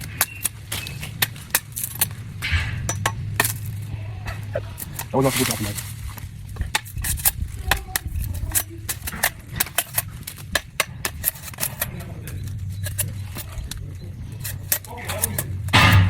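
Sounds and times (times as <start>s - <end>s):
sharp clicks and taps: 0.0s - 16.0s
steady low rumble: 0.0s - 16.0s.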